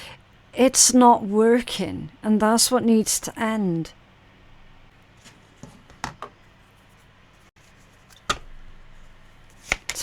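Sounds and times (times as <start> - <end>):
cards clicking and tapping: 9.5 - 10.0.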